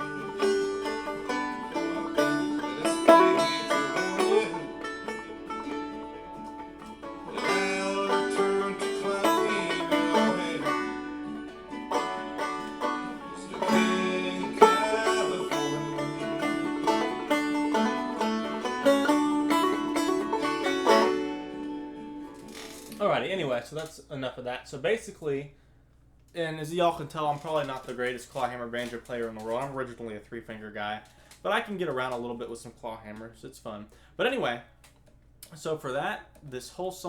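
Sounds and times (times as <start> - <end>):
banjo picking: 0.0 - 24.1, 27.0 - 30.1.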